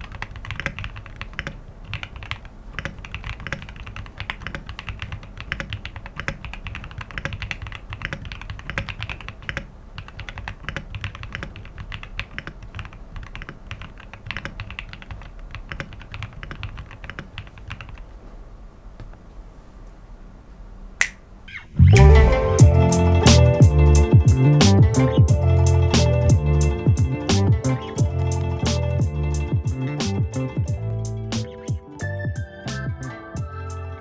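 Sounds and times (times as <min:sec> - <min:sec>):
typing on mechanical keyboard: 0:00.0 - 0:18.1.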